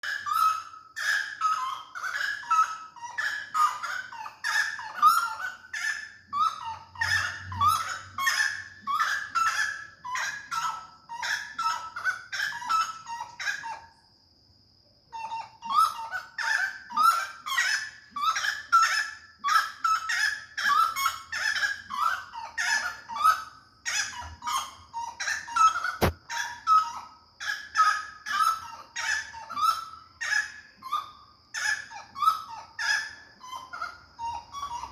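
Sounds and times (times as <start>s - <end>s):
sharp click: 26.0s - 26.2s.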